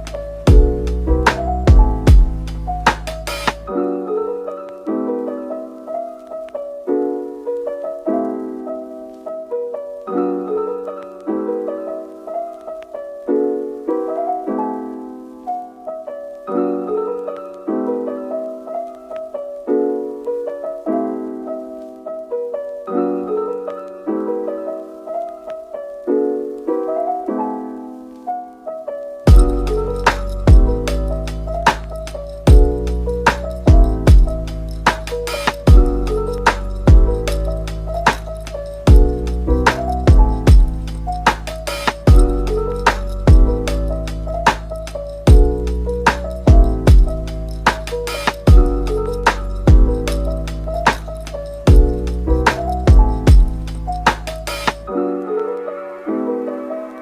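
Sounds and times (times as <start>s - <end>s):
music track with heavy bass: 0.0s - 3.7s, 29.3s - 54.9s
soft piano piece: 0.0s - 57.0s.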